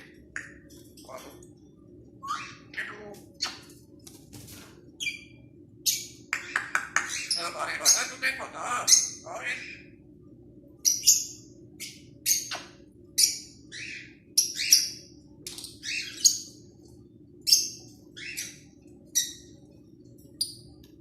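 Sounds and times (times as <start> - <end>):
parrot high-pitched calls: 2.2 - 3.7, 5.0 - 10.0, 10.9 - 15.0, 17.4 - 19.5.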